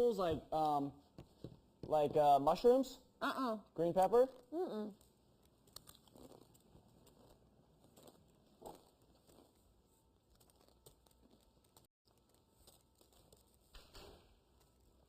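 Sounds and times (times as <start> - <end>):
soft clicks and rustles: 5.0 - 15.0.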